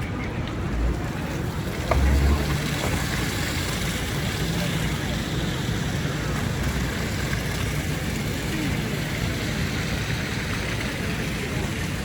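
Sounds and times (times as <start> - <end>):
city street noise: 0.0 - 12.0
low engine hum: 0.7 - 9.3.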